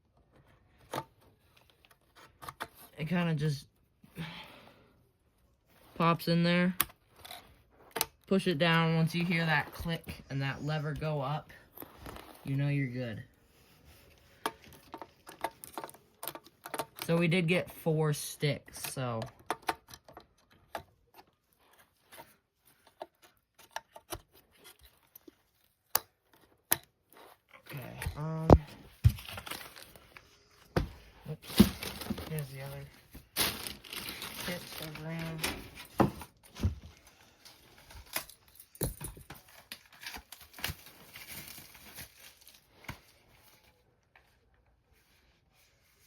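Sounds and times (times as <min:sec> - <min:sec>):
plastic packaging rustling: 0:28.8 - 0:43.9.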